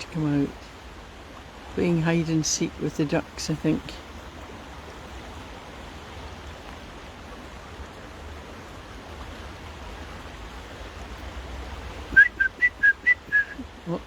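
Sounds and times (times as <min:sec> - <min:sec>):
rain falling on a river: 0:00.0 - 0:14.0
two-pitch whistled notes: 0:12.2 - 0:13.6.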